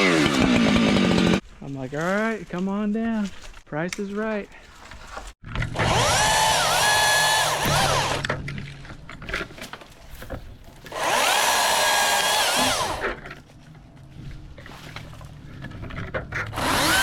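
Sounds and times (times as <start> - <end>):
battery chainsaw motor whine: 5.8 - 8.2, 10.9 - 13.0, 16.6 - 17.0.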